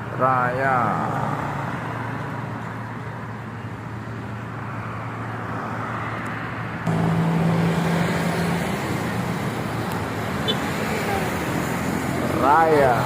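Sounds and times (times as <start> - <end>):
slow road traffic: 0.0 - 13.0
low engine drone: 6.8 - 13.0.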